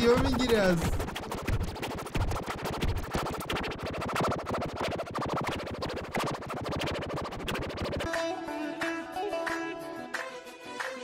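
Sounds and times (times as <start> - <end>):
fast electronic beat music: 0.0 - 8.1.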